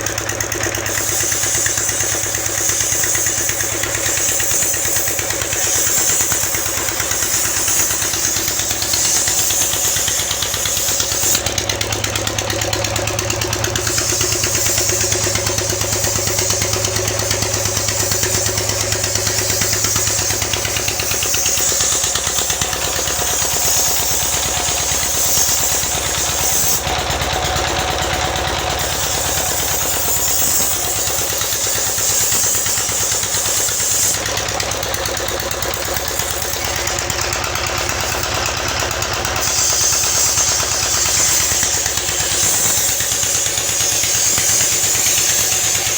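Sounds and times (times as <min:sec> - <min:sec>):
diesel engine idling: 0:00.0 - 0:45.9.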